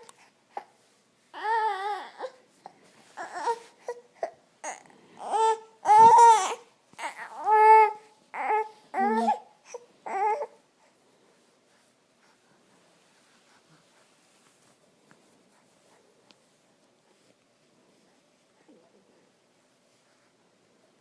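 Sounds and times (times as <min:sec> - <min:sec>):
baby whining cries: 0:01.4 - 0:02.4, 0:03.2 - 0:10.6.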